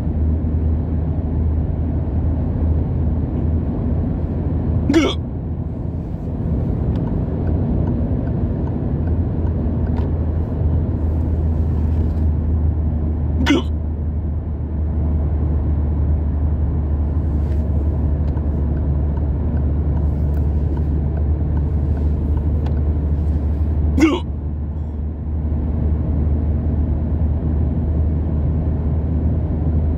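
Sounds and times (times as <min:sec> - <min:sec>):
car cabin rumble: 0:00.0 - 0:25.2
person hiccuping: 0:04.9 - 0:05.3, 0:13.4 - 0:13.8, 0:24.0 - 0:24.3.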